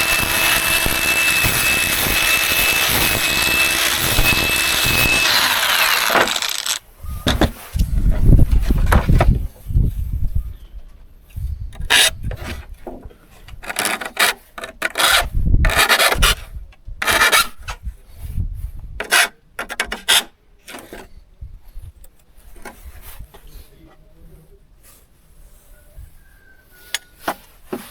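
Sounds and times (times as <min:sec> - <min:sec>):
file rasping on saw teeth: 0:00.0 - 0:06.8.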